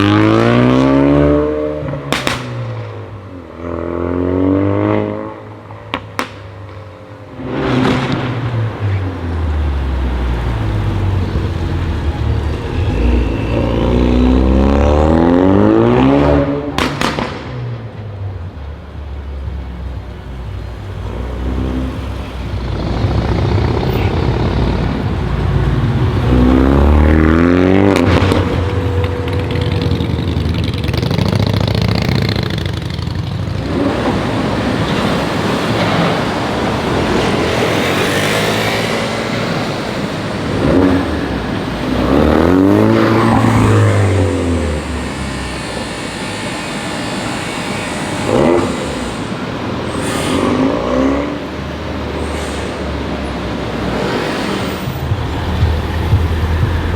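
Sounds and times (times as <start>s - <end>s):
car engine accelerating hard: 20.6s - 56.9s
exhaust cracks: 22.0s - 35.1s.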